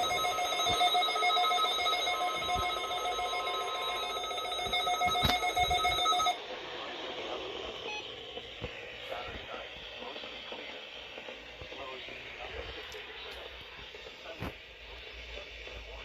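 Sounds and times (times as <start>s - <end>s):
pulsing electronic alarm beep: 0.0s - 6.4s.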